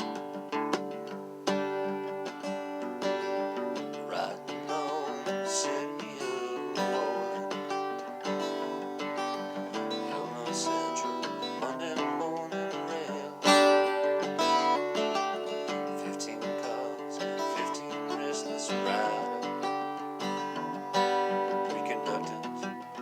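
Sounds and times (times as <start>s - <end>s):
acoustic guitar picked and strummed: 0.0s - 23.0s.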